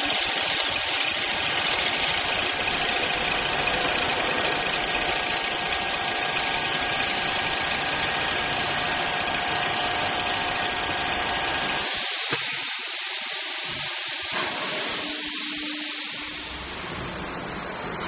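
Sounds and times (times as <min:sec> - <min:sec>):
drilling machine drone: 0:00.0 - 0:18.0
steady hiss: 0:11.3 - 0:18.0.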